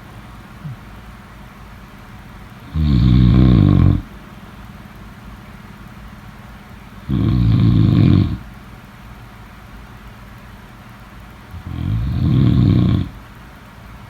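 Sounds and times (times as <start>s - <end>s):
loud low snore: 2.6s - 4.1s, 7.1s - 8.4s, 11.5s - 13.2s.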